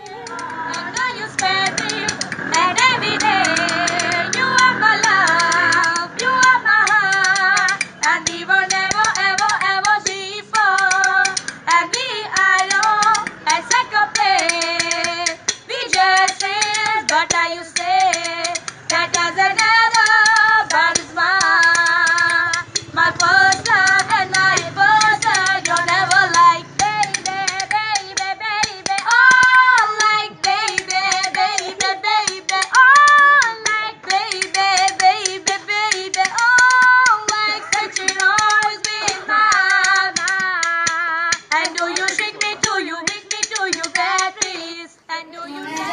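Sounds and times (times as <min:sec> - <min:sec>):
high-pitched voice singing: 0:00.0 - 0:02.2, 0:44.6 - 0:45.9
sharp percussive clicks: 0:00.0 - 0:44.8.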